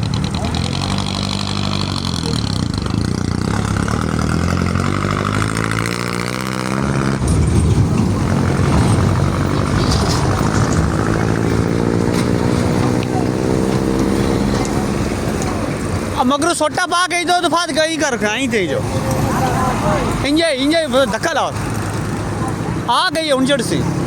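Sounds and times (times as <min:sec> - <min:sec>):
vehicle engine revving: 0:00.0 - 0:16.2.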